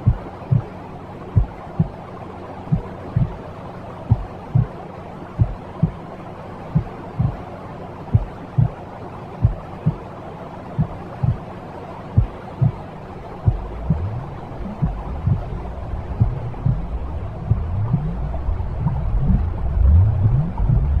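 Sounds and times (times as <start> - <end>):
heartbeat thumps: 0.0 - 0.7, 1.4 - 2.0, 2.7 - 3.4, 4.1 - 4.7, 5.4 - 6.0, 6.8 - 7.4, 8.1 - 8.8, 9.4 - 10.0, 10.8 - 11.4, 12.2 - 12.8, 13.4 - 21.0
steady white noise: 0.0 - 21.0.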